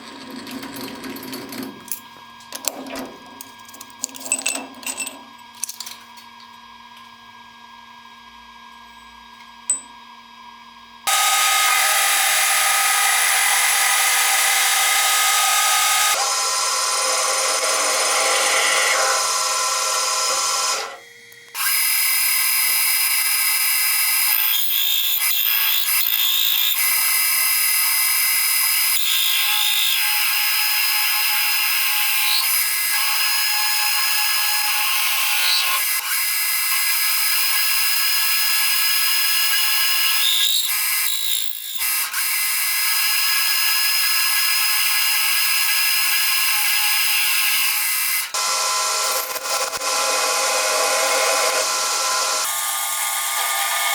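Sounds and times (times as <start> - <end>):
machine tool whining while cutting: 11.1 - 53.9.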